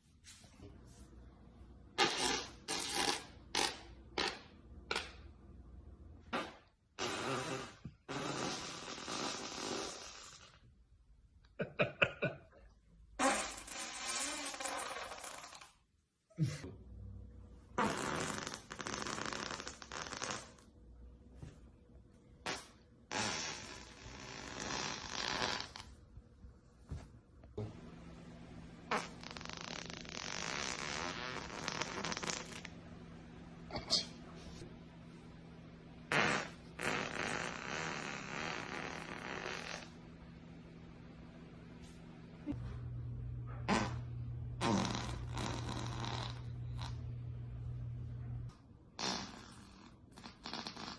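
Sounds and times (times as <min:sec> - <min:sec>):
long airy farts: 0:02.0 - 0:05.0, 0:06.2 - 0:10.6, 0:13.2 - 0:15.8, 0:17.8 - 0:20.7, 0:22.4 - 0:26.0, 0:28.9 - 0:32.7, 0:36.1 - 0:40.0, 0:43.5 - 0:47.1, 0:49.0 - 0:50.9
short pitched fart pops: 0:02.0 - 0:05.2, 0:06.2 - 0:10.6, 0:13.2 - 0:15.8, 0:17.8 - 0:20.7, 0:22.4 - 0:25.9, 0:28.9 - 0:32.7, 0:36.1 - 0:40.0, 0:43.5 - 0:47.0, 0:49.0 - 0:50.9
steady low hum: 0:25.9 - 0:49.0.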